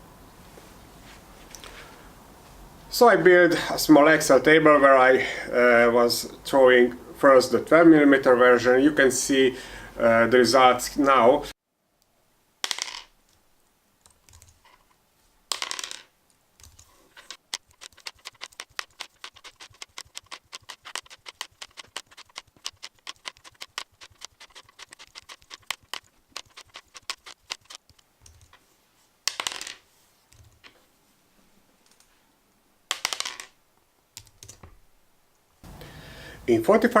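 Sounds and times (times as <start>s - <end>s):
plastic die rattling: 16.7s - 28.5s.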